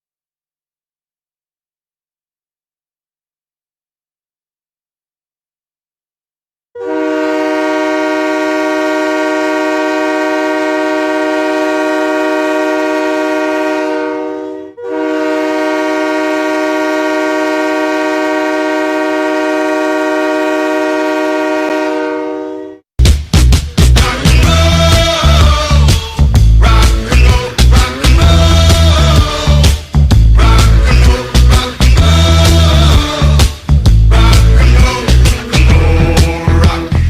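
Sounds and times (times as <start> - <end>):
multi-tone air horn blasts: 6.8 - 22.9
loud rock music: 23.0 - 37.0.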